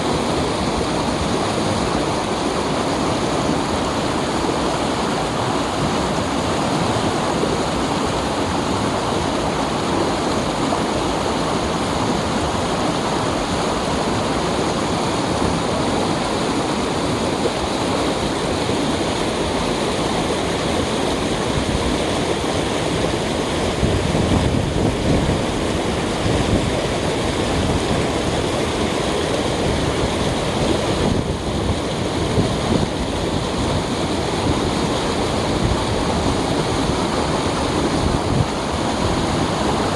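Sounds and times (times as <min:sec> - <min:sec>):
stream water flowing: 0:00.0 - 0:39.9.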